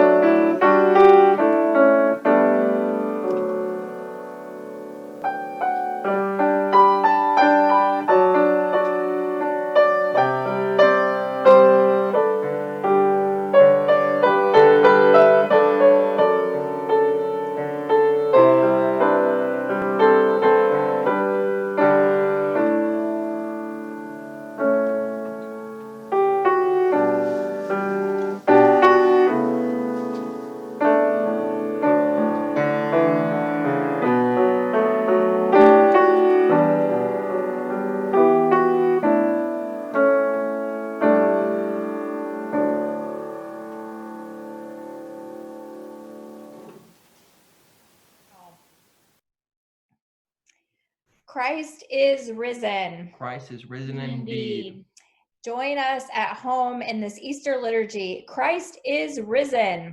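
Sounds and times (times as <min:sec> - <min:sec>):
slow solo piano: 0:00.0 - 0:47.4.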